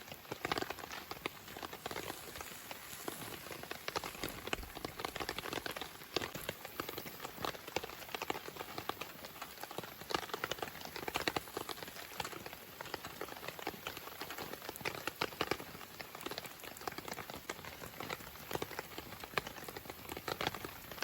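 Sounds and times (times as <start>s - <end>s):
campfire crackling and popping: 0.0s - 21.0s.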